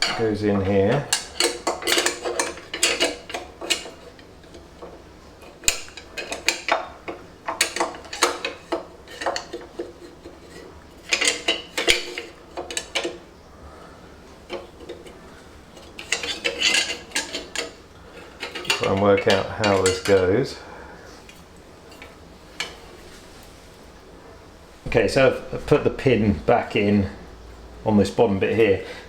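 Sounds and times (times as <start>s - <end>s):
sheet metal clinking and rattling: 0.0s - 13.3s, 14.5s - 20.4s.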